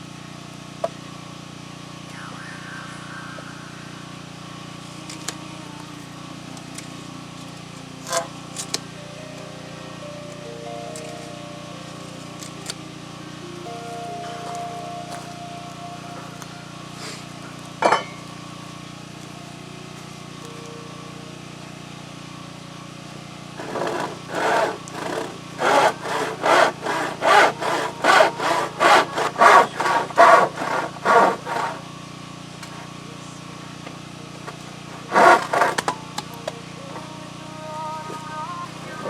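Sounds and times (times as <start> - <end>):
hand saw rasping through wood: 23.6 - 31.8, 35.1 - 35.9.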